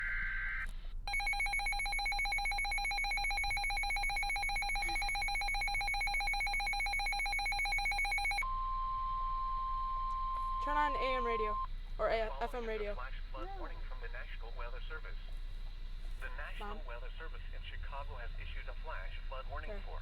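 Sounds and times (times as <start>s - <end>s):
data burst tones: 0.0s - 11.7s
steady warning tone: 0.0s - 11.7s.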